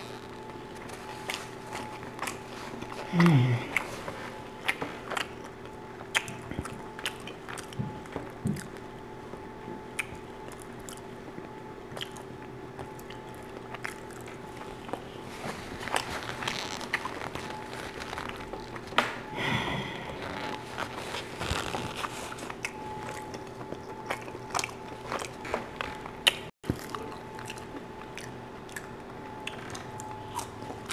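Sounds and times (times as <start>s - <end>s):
chewing crusty bread: 0.0s - 30.9s
faint steady hum: 0.0s - 30.9s
wet mouth clicks: 9.9s - 11.0s, 11.9s - 12.3s.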